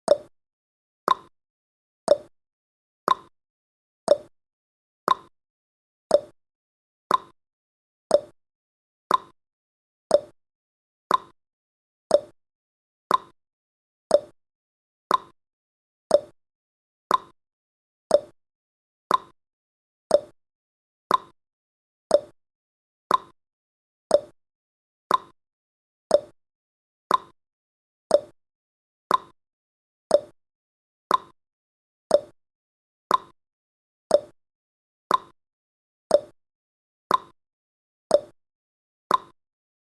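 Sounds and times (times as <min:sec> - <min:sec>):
clock ticking: 0:00.1 - 0:00.3, 0:01.1 - 0:01.3, 0:02.1 - 0:02.3, 0:03.1 - 0:03.3, 0:04.1 - 0:04.3, 0:05.1 - 0:05.3, 0:06.1 - 0:06.3, 0:07.1 - 0:07.3, 0:08.1 - 0:08.3, 0:09.1 - 0:09.3, 0:10.1 - 0:10.3, 0:11.1 - 0:11.3, 0:12.1 - 0:12.3, 0:13.1 - 0:13.3, 0:14.1 - 0:14.3, 0:15.1 - 0:15.3, 0:16.1 - 0:16.3, 0:17.1 - 0:17.3, 0:18.1 - 0:18.3, 0:19.1 - 0:19.3, 0:20.1 - 0:20.3, 0:21.1 - 0:21.3, 0:22.1 - 0:22.3, 0:23.1 - 0:23.3, 0:24.1 - 0:24.3, 0:25.1 - 0:25.3, 0:26.1 - 0:26.3, 0:27.1 - 0:27.3, 0:28.1 - 0:28.3, 0:29.1 - 0:29.3, 0:30.1 - 0:30.3, 0:31.1 - 0:31.4, 0:32.1 - 0:32.4, 0:33.1 - 0:33.4, 0:34.1 - 0:34.4, 0:35.1 - 0:35.4, 0:36.1 - 0:36.4, 0:37.1 - 0:37.4, 0:38.1 - 0:38.4, 0:39.1 - 0:39.4.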